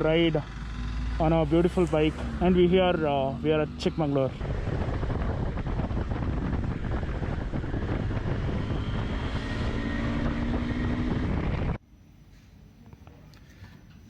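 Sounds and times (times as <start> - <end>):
motorcycle engine running: 0.0 - 11.8
wind buffeting microphone: 3.7 - 11.8.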